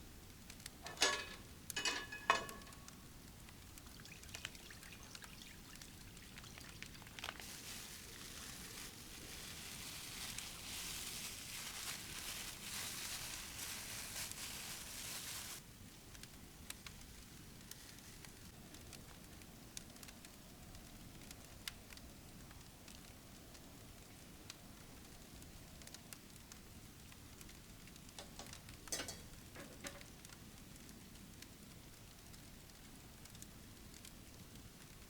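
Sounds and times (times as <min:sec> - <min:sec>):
liquid pouring: 0:03.8 - 0:07.3
metallic clinks: 0:28.2 - 0:30.0.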